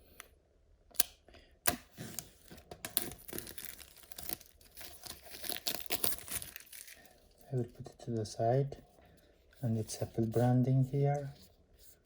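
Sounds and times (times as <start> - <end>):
packaging tearing and rustling: 1.9 - 7.5.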